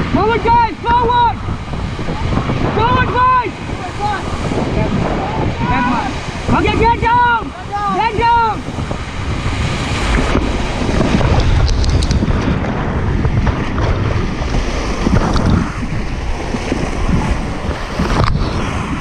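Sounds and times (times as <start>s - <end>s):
river whitewater rushing: 0.0s - 12.9s
wind rumble on microphone: 0.0s - 19.0s.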